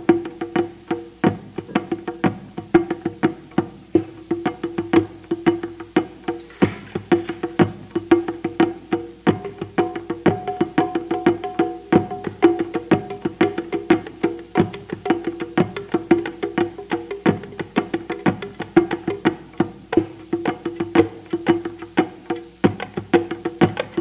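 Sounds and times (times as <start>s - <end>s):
hand percussion strikes: 0.0s - 24.0s
short hiss: 6.0s - 7.8s.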